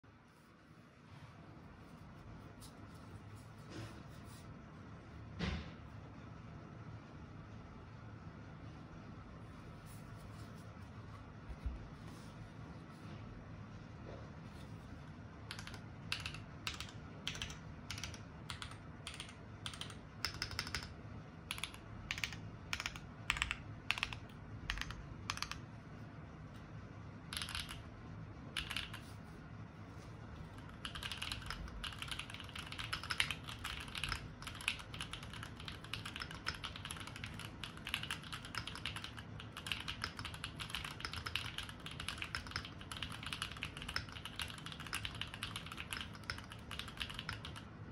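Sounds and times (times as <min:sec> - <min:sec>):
mechanical keyboard typing: 0:15.5 - 0:25.6, 0:27.3 - 0:27.9, 0:28.5 - 0:29.1, 0:30.5 - 0:47.7.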